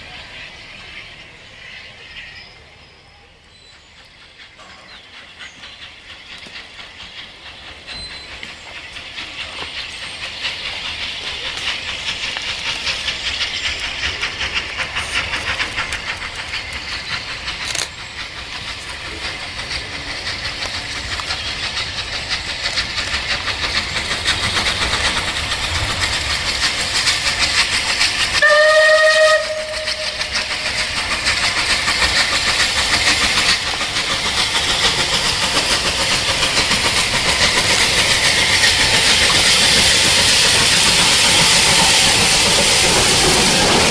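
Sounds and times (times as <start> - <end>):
rail noise: 0.0 - 43.9
steam locomotive exhaust beats: 0.0 - 43.9
train whistle blast: 28.4 - 30.4.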